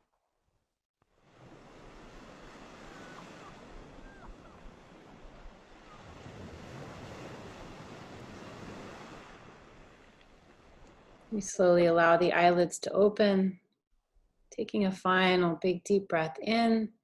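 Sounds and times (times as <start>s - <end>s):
ocean surf breaking on beach: 1.2s - 11.4s.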